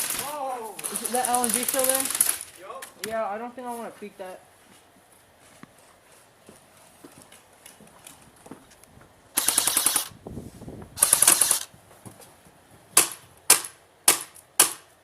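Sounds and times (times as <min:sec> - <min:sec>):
airsoft gun shots: 0:09.4 - 0:10.1, 0:11.0 - 0:11.7, 0:13.0 - 0:14.9.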